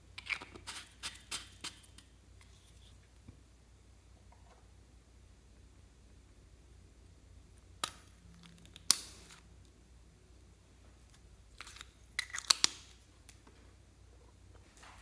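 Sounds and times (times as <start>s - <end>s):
slime clicking and popping: 7.8s - 9.4s, 11.6s - 13.0s.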